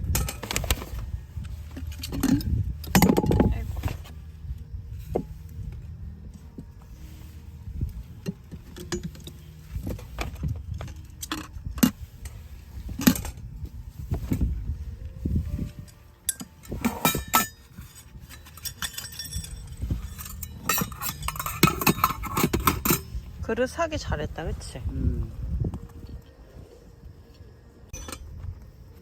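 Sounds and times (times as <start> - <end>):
low steady rumble: 0.0 - 29.0
dishes clinking and knocking: 2.1 - 3.6, 18.7 - 23.1.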